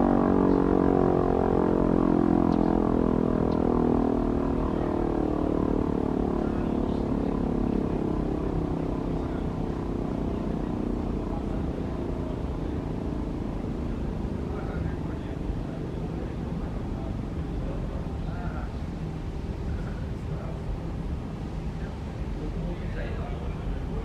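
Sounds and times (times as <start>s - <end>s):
factory siren winding down: 0.0s - 5.7s.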